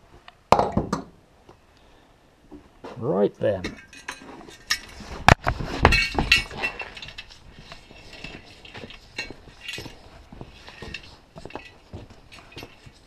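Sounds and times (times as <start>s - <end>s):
metal clinks and knocks: 3.6s - 13.0s.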